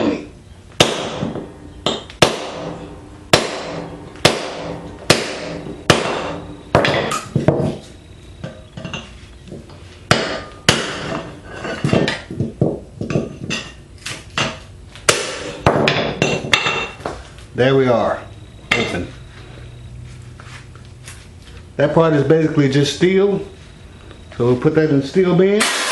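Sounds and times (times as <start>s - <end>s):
hammer striking metal hatchet: 0.8s - 7.7s, 10.1s - 11.3s, 14.4s - 16.9s, 25.6s - 25.9s.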